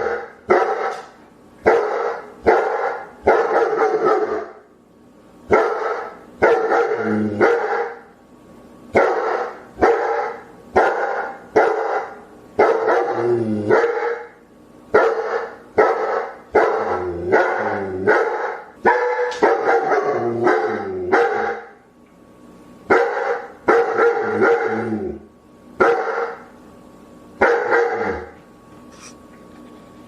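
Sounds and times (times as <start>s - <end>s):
dog barking: 0.0s - 4.6s, 5.5s - 8.0s, 9.0s - 21.8s, 22.9s - 24.8s, 25.8s - 26.5s, 27.4s - 28.3s.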